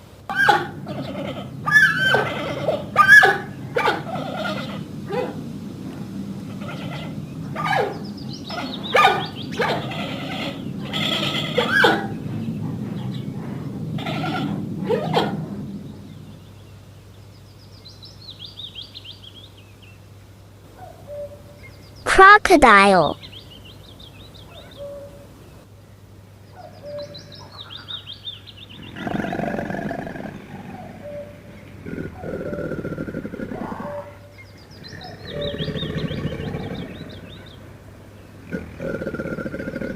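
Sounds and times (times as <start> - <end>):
birds chirping: 23.0 - 33.0, 33.8 - 39.9
crocodile growling: 28.8 - 34.2, 38.4 - 39.9.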